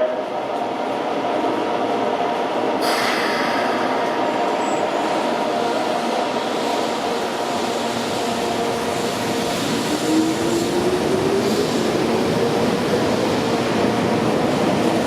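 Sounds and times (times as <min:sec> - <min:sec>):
high whine: 0:02.8 - 0:06.6
electric train running: 0:02.9 - 0:15.0.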